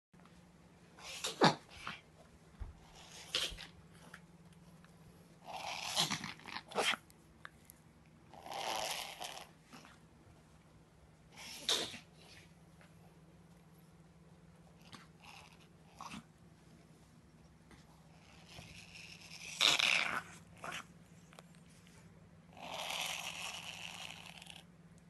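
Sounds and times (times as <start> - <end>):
dog reverse sneezing: 1.0 - 2.0, 11.4 - 12.1.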